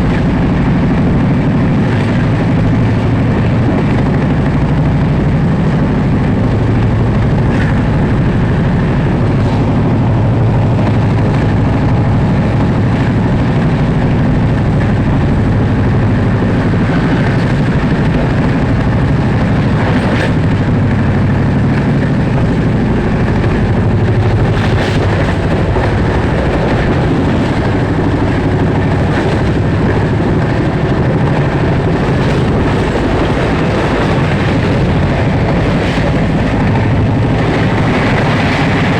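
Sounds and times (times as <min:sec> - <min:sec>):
train wheels rumbling on rail: 0:00.0 - 0:38.9.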